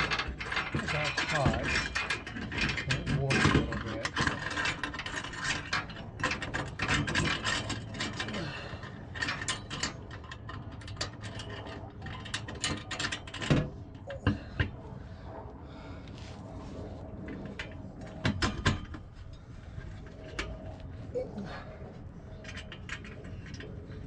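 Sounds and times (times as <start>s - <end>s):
metallic clicking and scraping: 0.0s - 14.9s, 16.8s - 24.0s.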